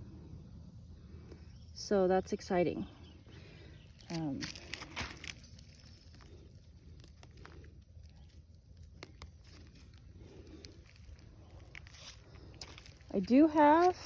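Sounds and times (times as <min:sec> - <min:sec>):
faint low rumble: 0:00.0 - 0:14.0.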